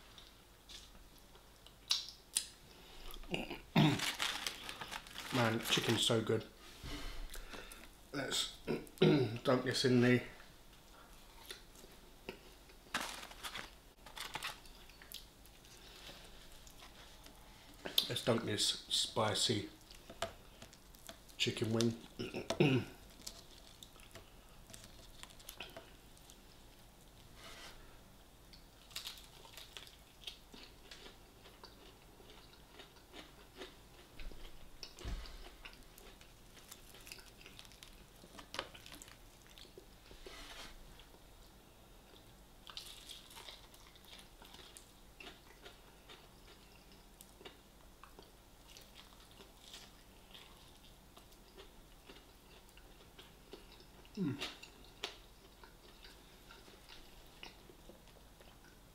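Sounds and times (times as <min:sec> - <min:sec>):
chewing crunchy chicken wing: 0:28.8 - 0:39.9, 0:42.1 - 0:58.8.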